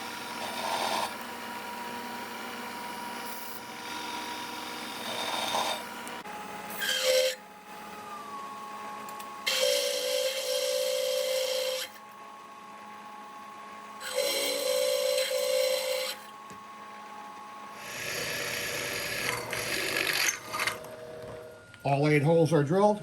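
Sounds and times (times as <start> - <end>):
machine running hum: 0.0 - 23.0
drill cutting steel squealing: 6.7 - 7.4, 9.4 - 12.0, 14.0 - 16.2, 17.8 - 20.8.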